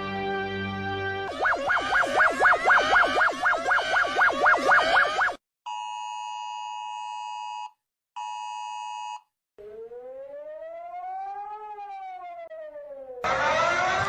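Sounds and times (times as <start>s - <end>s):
siren wailing: 1.3s - 5.4s, 9.6s - 14.0s.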